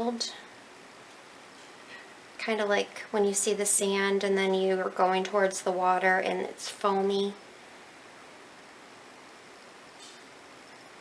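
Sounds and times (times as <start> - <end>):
steady hiss: 0.0 - 11.0
faint brief rustle: 10.0 - 10.3.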